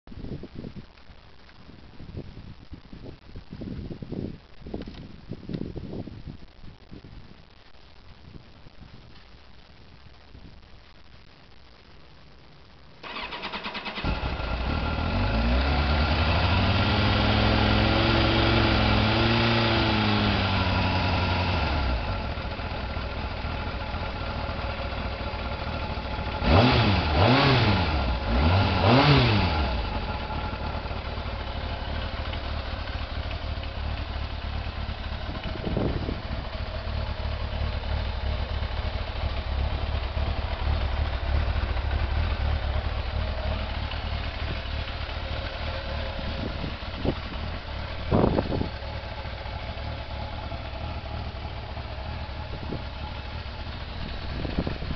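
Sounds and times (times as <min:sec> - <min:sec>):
motorcycle engine idling: 0:13.0 - 0:54.9
motorcycle engine revving: 0:13.0 - 0:54.9
motorcycle engine starting: 0:13.0 - 0:54.9.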